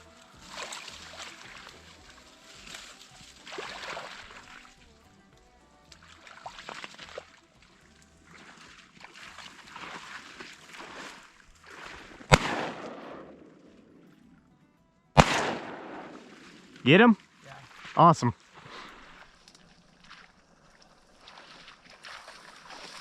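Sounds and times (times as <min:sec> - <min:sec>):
water sloshing: 0:00.0 - 0:05.0, 0:05.8 - 0:14.4, 0:15.2 - 0:23.0
shotgun shots: 0:12.3 - 0:14.0, 0:15.2 - 0:16.8.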